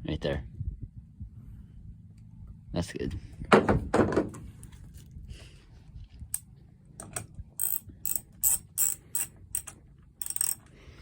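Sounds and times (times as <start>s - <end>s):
short ratcheting clicks: 7.0s - 10.7s.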